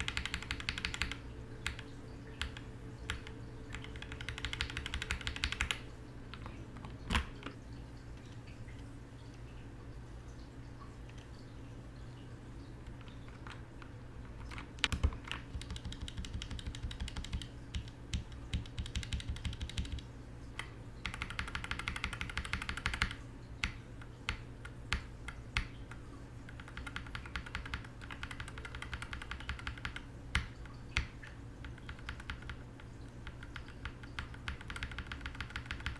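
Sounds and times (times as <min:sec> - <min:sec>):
mechanical keyboard typing: 0:00.0 - 0:05.8, 0:14.4 - 0:32.6, 0:33.2 - 0:35.9.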